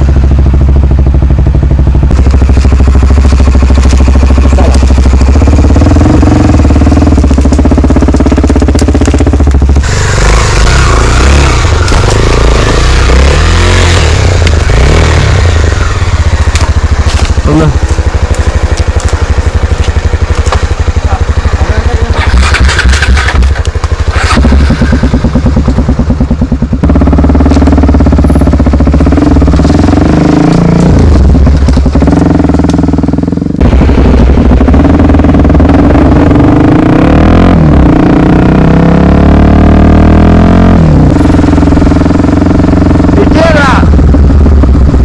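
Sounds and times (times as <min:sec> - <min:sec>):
motorcycle engine revving: 0:00.0 - 0:45.0.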